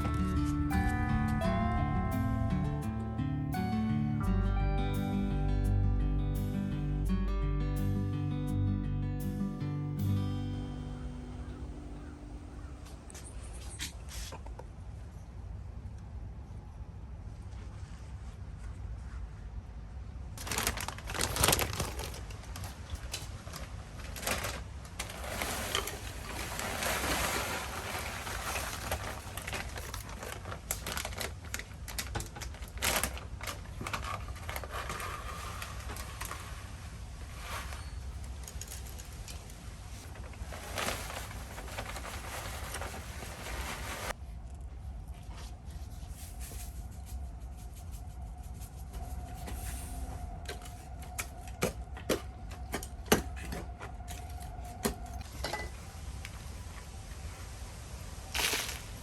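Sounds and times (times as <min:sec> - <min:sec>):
rustling: 0:20.4 - 0:51.6, 0:58.2 - 0:59.0.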